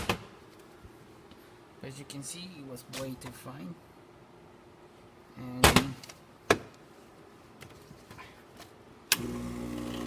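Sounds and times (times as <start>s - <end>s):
espresso machine pump buzzing: 9.2s - 10.0s.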